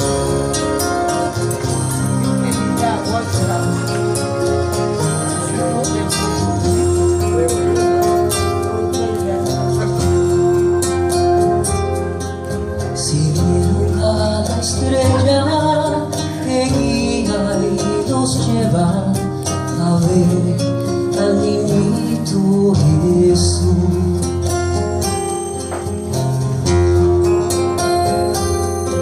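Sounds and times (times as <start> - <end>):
bass line: 0.0 - 29.0
live band playing: 0.0 - 29.0
person singing: 12.5 - 24.6.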